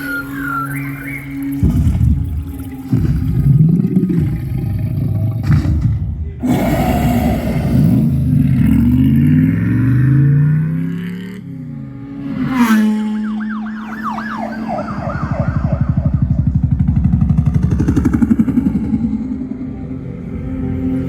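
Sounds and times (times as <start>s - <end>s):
car engines revving: 0.0s - 21.0s
heavy deep bass: 1.5s - 9.8s, 14.0s - 21.0s.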